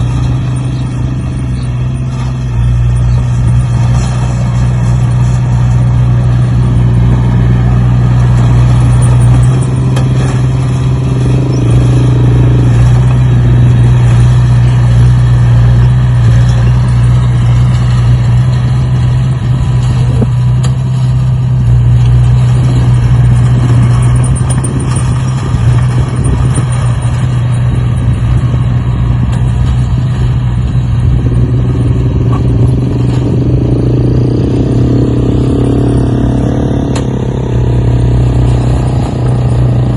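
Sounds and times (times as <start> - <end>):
engine humming steadily: 0.0 - 39.9.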